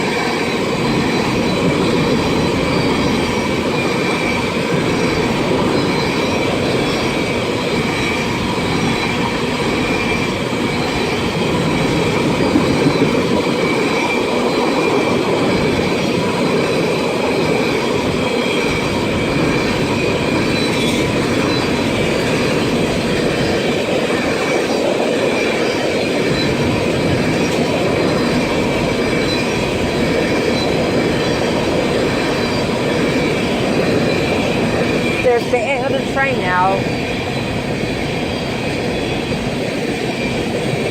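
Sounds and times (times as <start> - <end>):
high wheel squeal: 0.0 - 40.5
train wheels rumbling on rail: 0.0 - 40.9.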